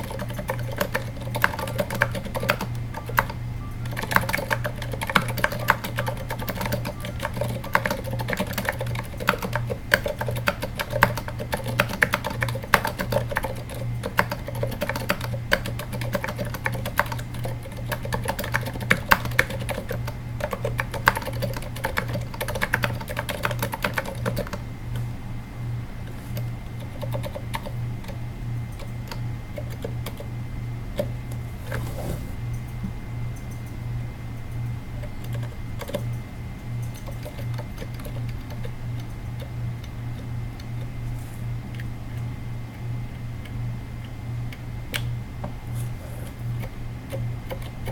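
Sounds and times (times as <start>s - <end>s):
soft keyboard keystrokes: 0.0s - 25.1s, 35.0s - 36.2s
steady low hum: 0.0s - 47.9s.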